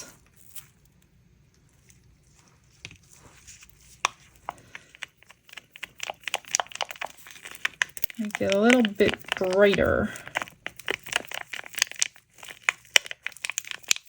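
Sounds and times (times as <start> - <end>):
stick scraping a plastic cup: 2.8 - 14.0.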